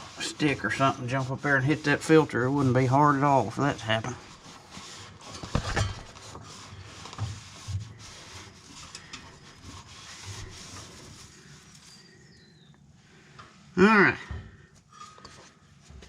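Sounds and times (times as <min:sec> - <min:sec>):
hands rubbing and scraping: 0:00.0 - 0:12.3.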